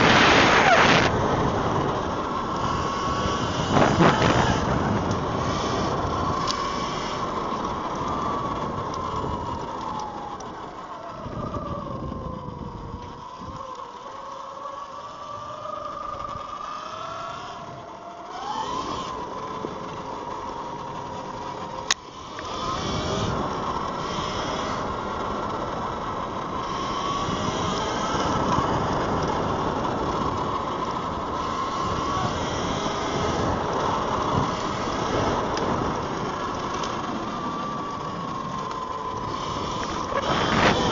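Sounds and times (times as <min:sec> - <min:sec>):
electric motor whining: 0:00.0 - 0:40.9
wind and tyre noise: 0:00.0 - 0:40.9.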